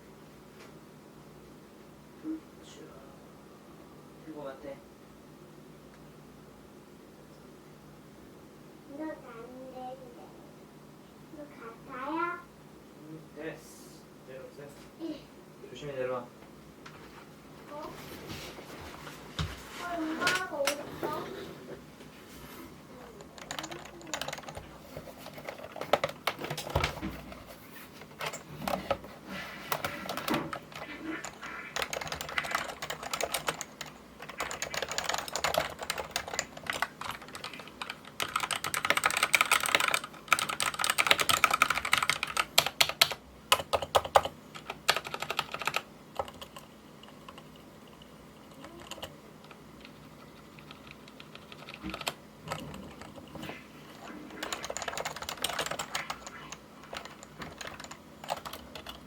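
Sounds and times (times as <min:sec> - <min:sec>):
typing on computer keyboard: 0:23.2 - 0:27.0, 0:28.1 - 0:29.0, 0:29.7 - 0:53.4, 0:54.3 - 0:59.0.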